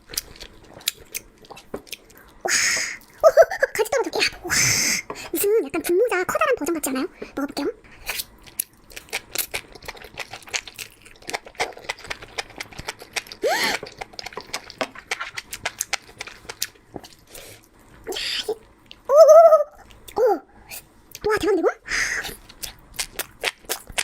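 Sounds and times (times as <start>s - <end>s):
mouth chewing food: 0.0s - 2.4s, 8.0s - 17.8s, 22.2s - 24.0s.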